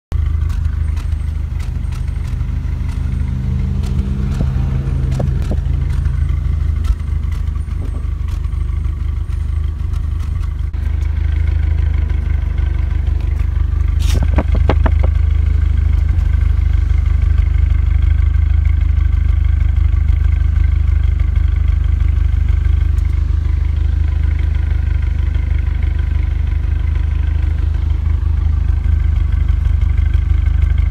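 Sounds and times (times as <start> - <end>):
car exhaust idling: 0.1 - 30.9
puffing engine misfire: 0.2 - 30.9
sharp clicks: 0.4 - 3.2, 3.8 - 6.2.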